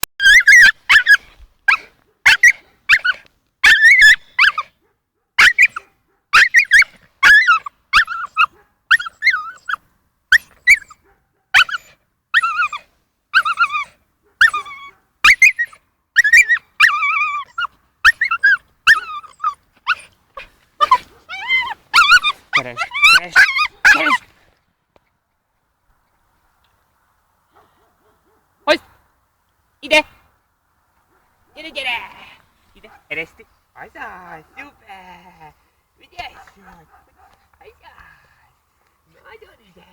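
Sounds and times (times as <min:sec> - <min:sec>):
dog whining and yelping: 0:00.2 - 0:04.7, 0:05.4 - 0:24.2.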